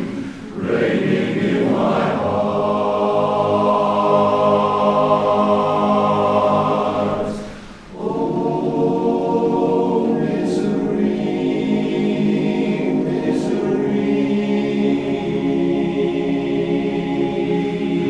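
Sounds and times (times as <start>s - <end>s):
barbershop chorus singing a cappella: 0.0s - 18.0s
breath: 0.2s - 0.5s, 7.4s - 8.0s.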